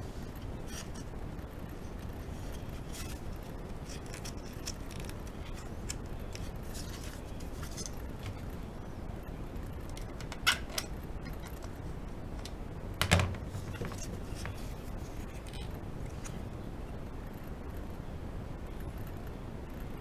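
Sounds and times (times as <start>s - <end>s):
light clicks and scrapes: 0.0s - 8.9s, 9.6s - 16.4s
low background hum: 0.0s - 20.0s.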